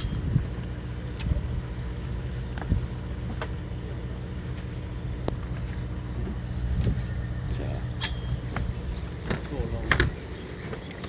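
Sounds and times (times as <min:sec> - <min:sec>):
low mechanical hum of boat machinery: 0:00.0 - 0:11.0
faint clicks and knocks of gear: 0:08.0 - 0:11.0.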